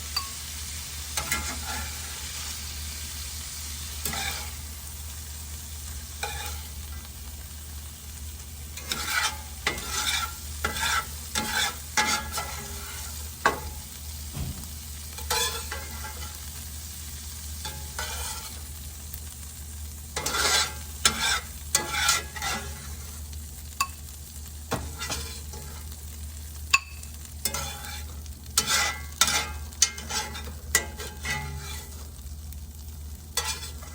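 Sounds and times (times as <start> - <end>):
food sizzling in a pan: 0.0 - 33.9
utensil scraping a pan: 1.2 - 2.6, 4.0 - 4.6, 6.2 - 7.1, 8.8 - 16.5, 17.6 - 18.7, 20.2 - 23.2, 24.7 - 25.9, 27.4 - 32.2, 33.3 - 33.9.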